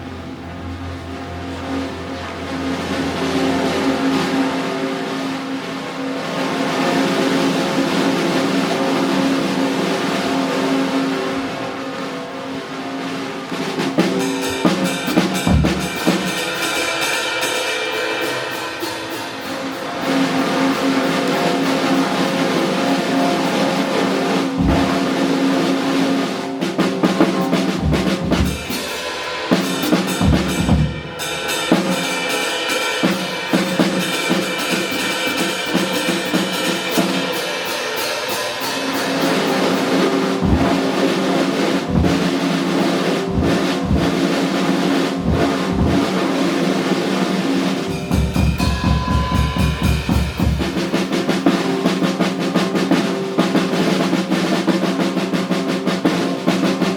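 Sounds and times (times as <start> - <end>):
jazz band playing: 0.0 - 56.9
rolling low drum strokes: 0.0 - 56.9
snare and bass drum strokes: 0.0 - 56.9.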